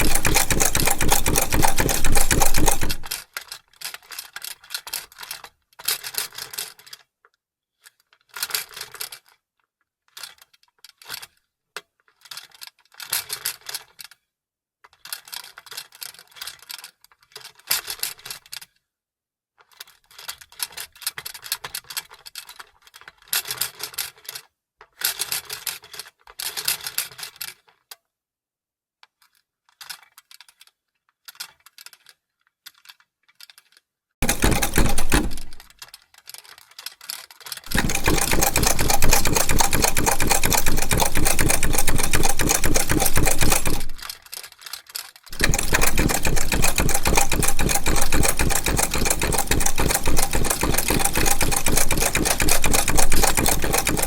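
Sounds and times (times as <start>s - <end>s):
sewing machine stitching: 0.0s - 3.2s, 34.2s - 35.7s, 37.7s - 44.2s, 45.3s - 54.0s.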